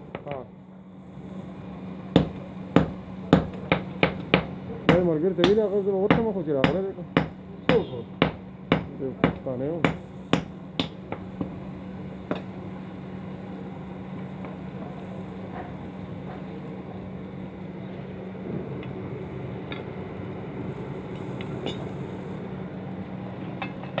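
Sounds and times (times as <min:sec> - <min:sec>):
steady mechanical hum: 0:00.0 - 0:24.0.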